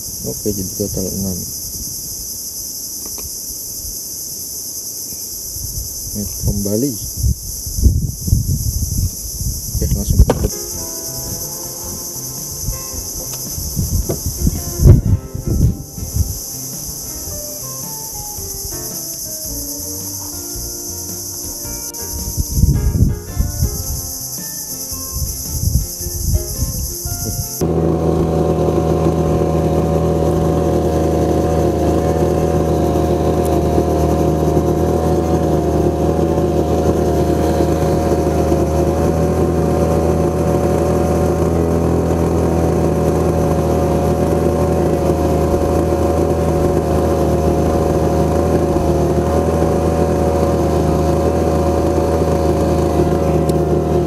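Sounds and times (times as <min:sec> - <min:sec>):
boat engine running: 0:00.0 - 0:01.6, 0:09.8 - 0:24.2, 0:25.1 - 0:54.0
crickets chirring: 0:00.0 - 0:54.0.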